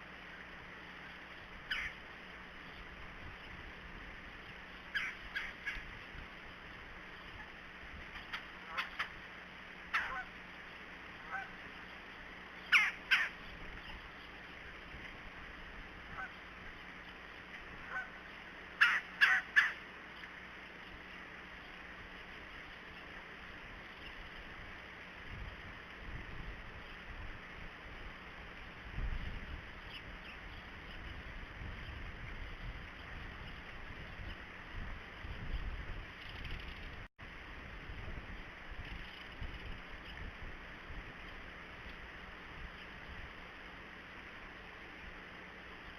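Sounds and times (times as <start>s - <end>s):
woodpecker calling: 1.6s - 2.9s, 4.7s - 5.9s, 7.4s - 9.2s, 9.9s - 14.5s, 17.8s - 20.3s.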